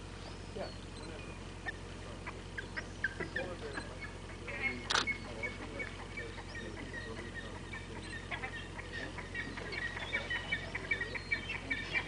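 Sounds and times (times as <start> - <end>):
flock of birds calling: 0.0 - 12.0
clicks: 4.9 - 5.1.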